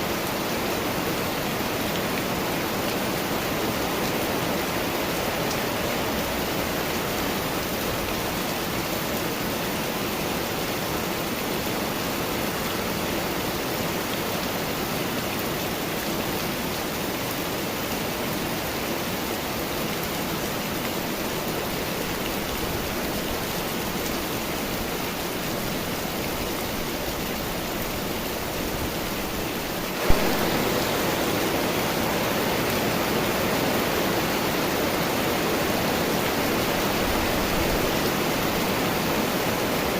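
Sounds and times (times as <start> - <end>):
heavy rain hissing: 14.7 - 39.9.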